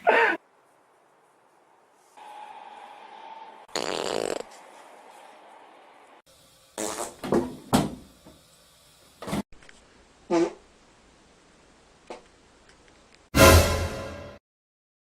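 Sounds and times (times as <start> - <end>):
loud fart: 3.7 - 4.5, 6.8 - 7.4, 10.3 - 10.6.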